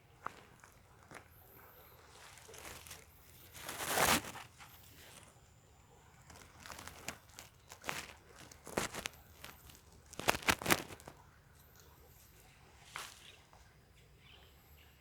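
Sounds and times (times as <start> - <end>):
rustling and crinkling: 0.2 - 5.4, 6.0 - 11.8, 12.8 - 13.7
short scuffs: 2.6 - 4.5.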